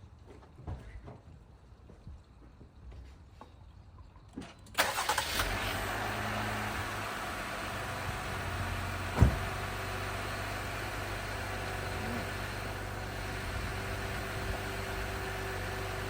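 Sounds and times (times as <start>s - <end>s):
car engine idling: 4.8s - 16.0s
sharp thump: 9.1s - 9.6s.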